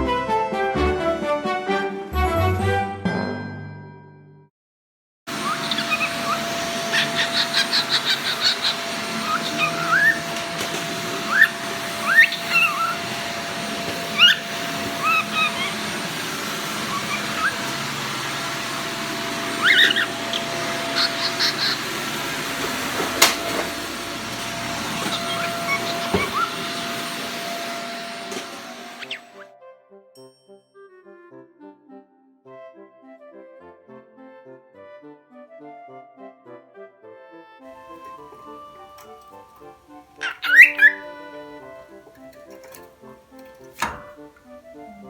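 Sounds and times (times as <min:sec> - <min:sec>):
cockatiel chirping and whistling: 0:05.3 - 0:29.5, 0:40.2 - 0:41.8
vacuum cleaner running: 0:05.3 - 0:29.5, 0:37.7 - 0:45.0.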